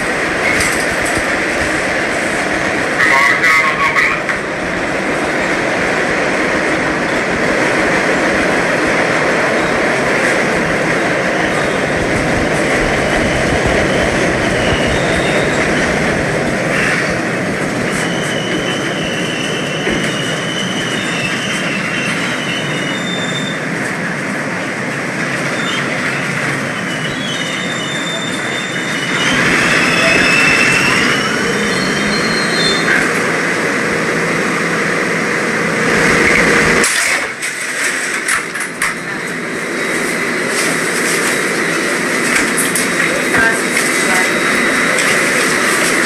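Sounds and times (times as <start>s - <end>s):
subway train rumbling on rails: 0.0s - 46.0s
train wheels squealing: 13.6s - 16.0s, 17.7s - 23.7s, 25.4s - 33.1s.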